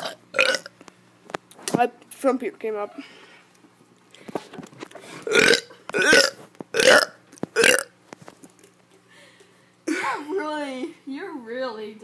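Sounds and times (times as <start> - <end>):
child burping: 0.0 - 0.7, 5.3 - 7.9.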